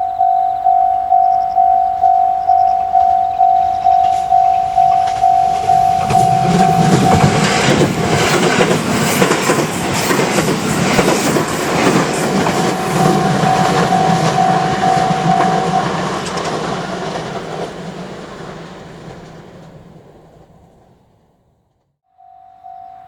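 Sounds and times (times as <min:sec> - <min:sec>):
level-crossing alarm ringing: 0:00.0 - 0:08.8, 0:11.7 - 0:16.7, 0:22.1 - 0:23.0
train wheels clattering: 0:01.2 - 0:20.6.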